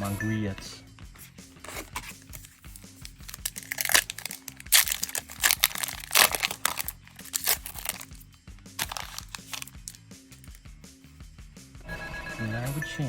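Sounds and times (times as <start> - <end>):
background music: 0.0 - 13.0
foil wrapper crinkling: 1.6 - 8.2, 8.8 - 10.6.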